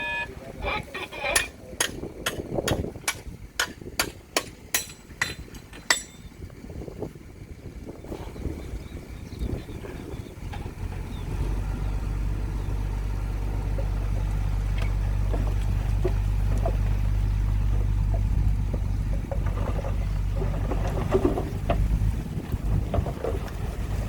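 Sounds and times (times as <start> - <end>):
clanks and rattles: 1.4 - 6.7, 13.4 - 24.0
heavy diesel engine running: 4.2 - 24.0.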